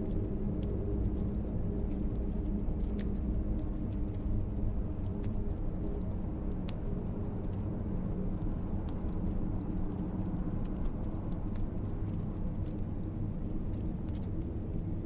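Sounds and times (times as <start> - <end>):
fire pops and ticks: 0.0 - 15.0
wood fire crackling: 0.0 - 15.0.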